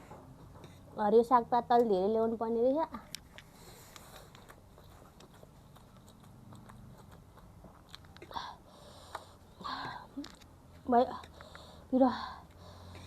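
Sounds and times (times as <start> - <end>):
person chewing food: 3.2 - 13.0.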